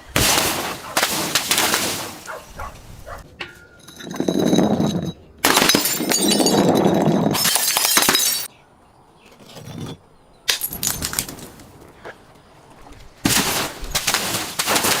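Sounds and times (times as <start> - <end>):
glass bottles smashing: 0.1 - 2.4, 3.8 - 8.5, 10.5 - 11.5, 13.3 - 15.0.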